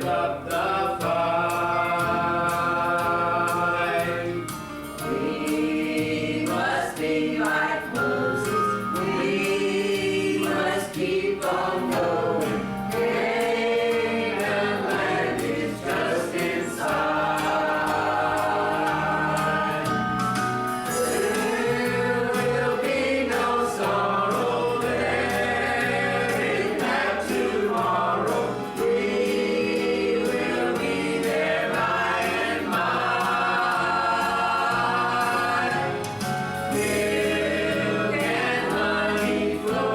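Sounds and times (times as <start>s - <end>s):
group singing a hymn: 0.0s - 39.9s
instrumental accompaniment: 0.0s - 39.9s.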